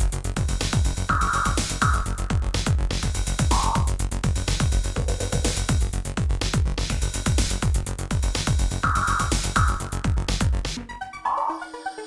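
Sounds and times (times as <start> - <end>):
fast kick-drum beat: 0.0 - 10.8
electronic dance music: 1.1 - 2.6, 3.4 - 3.9, 8.8 - 12.0
synthesizer tones: 11.0 - 12.0.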